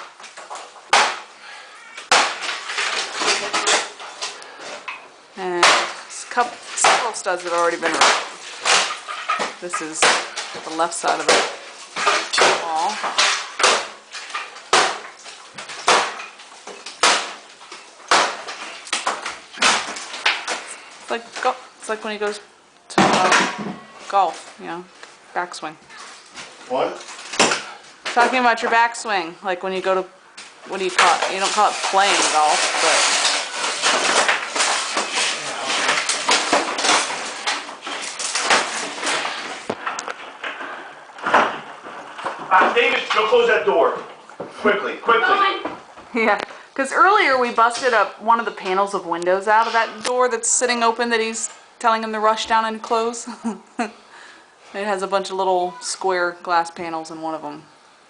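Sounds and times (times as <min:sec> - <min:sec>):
boards breaking and clattering: 0:00.0 - 0:21.6, 0:22.9 - 0:24.5, 0:25.9 - 0:29.0, 0:30.4 - 0:44.2
wall being demolished: 0:00.0 - 0:24.7, 0:25.9 - 0:53.4.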